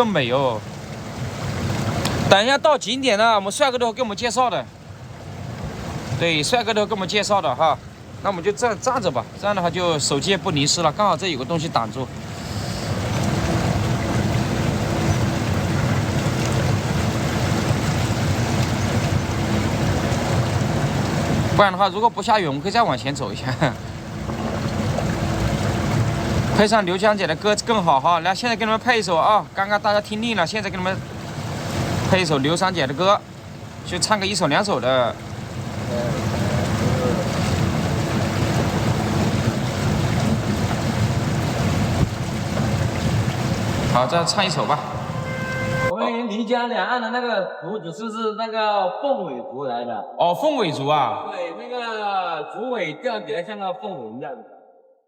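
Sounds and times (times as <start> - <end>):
rain and water hiss: 0.0 - 45.9
low motor rumble: 11.4 - 45.9
wind on microphone: 23.6 - 26.8, 35.6 - 45.9.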